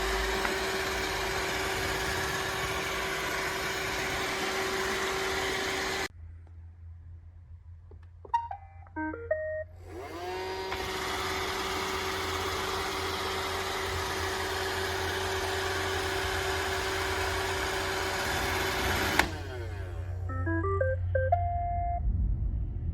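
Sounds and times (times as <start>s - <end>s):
robot vacuum motors whining: 0.0s - 6.1s, 9.8s - 20.3s
robot vacuum beeping tune: 8.4s - 12.8s, 19.2s - 22.0s.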